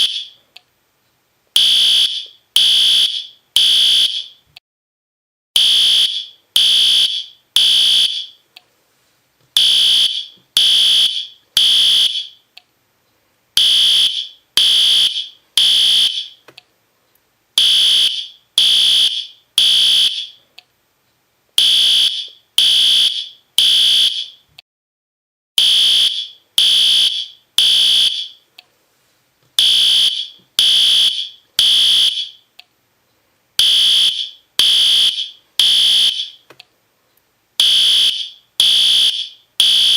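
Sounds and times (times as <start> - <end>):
fire alarm horn blasts: 0.0 - 0.4, 1.6 - 4.4, 5.6 - 8.4, 9.6 - 12.4, 13.6 - 16.4, 17.6 - 20.4, 21.6 - 24.4, 25.6 - 28.4, 29.6 - 32.5, 33.6 - 36.4, 37.6 - 39.9.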